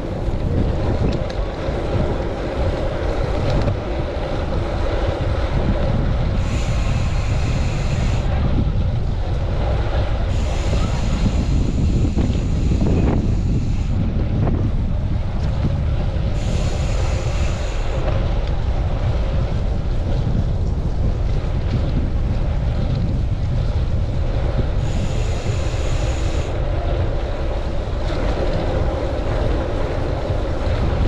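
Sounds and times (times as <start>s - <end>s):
wind buffeting microphone: 0.0s - 31.0s.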